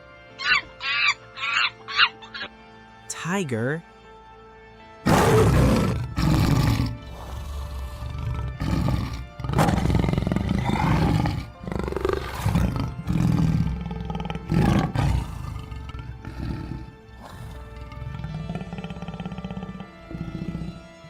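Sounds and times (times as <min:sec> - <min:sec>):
tiger roaring and growling: 0:05.1 - 0:21.0.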